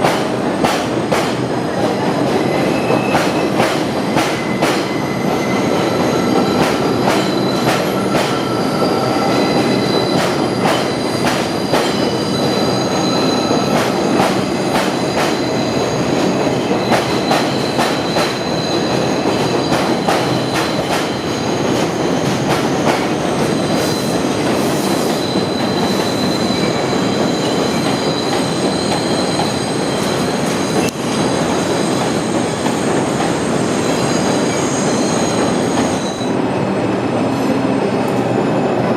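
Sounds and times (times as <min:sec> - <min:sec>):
subway train rumbling: 0:00.0 - 0:38.9
high wheel squeal: 0:04.2 - 0:21.8, 0:23.0 - 0:32.4, 0:33.5 - 0:36.3.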